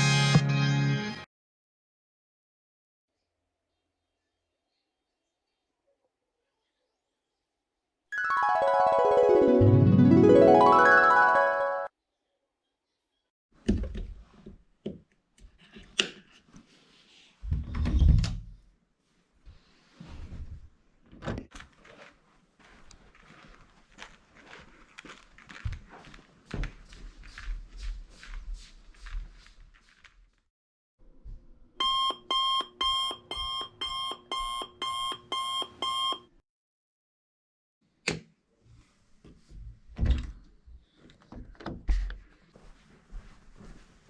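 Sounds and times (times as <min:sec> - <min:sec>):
alarm clock beeping: 0:31.8 - 0:36.3.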